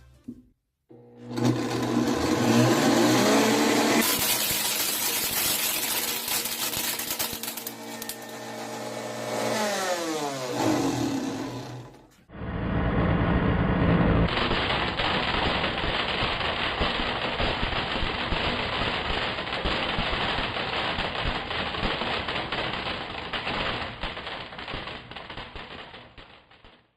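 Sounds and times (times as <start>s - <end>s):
blender motor humming: 0.9s - 14.3s
blender blades rattling ice: 1.4s - 9.2s.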